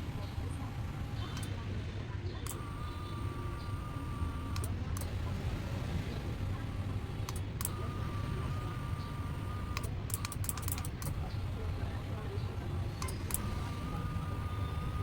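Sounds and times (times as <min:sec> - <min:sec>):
motor high whine: 0:00.0 - 0:15.0
electric motor humming: 0:02.5 - 0:15.0
sharp clicks: 0:04.5 - 0:05.1, 0:07.2 - 0:07.9, 0:09.6 - 0:11.3, 0:13.0 - 0:13.6.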